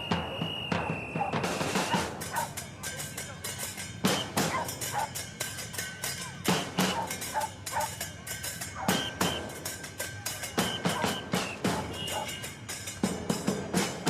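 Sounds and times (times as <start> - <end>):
drum kit beat: 0.0 - 14.0.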